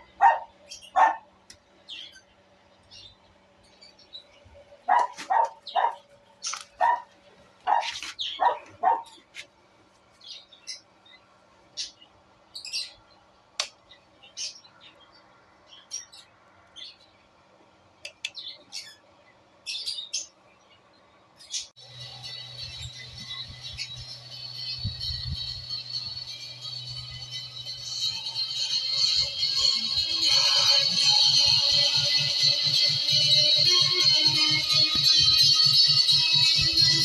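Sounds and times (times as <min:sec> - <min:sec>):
birds chirping: 0:00.0 - 0:09.4, 0:18.0 - 0:37.0
dog barking: 0:00.2 - 0:01.3, 0:04.9 - 0:06.0, 0:06.8 - 0:07.1, 0:07.7 - 0:09.2.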